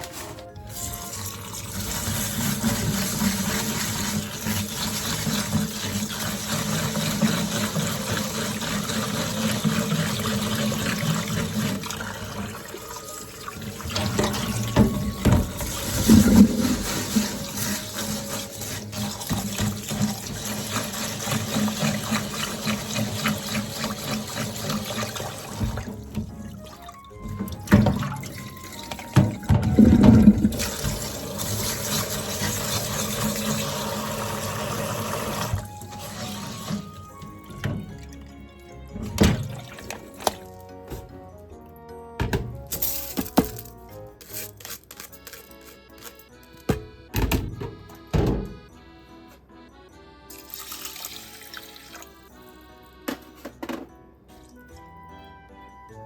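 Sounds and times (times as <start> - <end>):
tap water running into sink: 0.6 - 41.2, 50.3 - 52.2.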